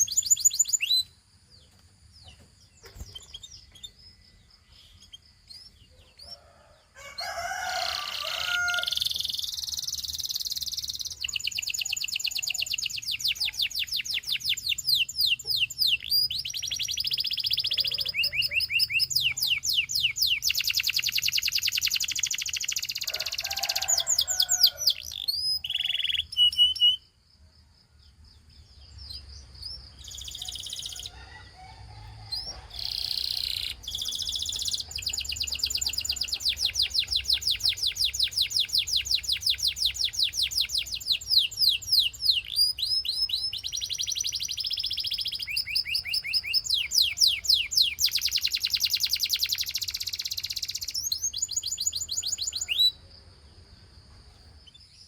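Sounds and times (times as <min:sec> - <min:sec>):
canary singing trills: 0:00.0 - 0:27.2, 0:28.4 - 0:53.0.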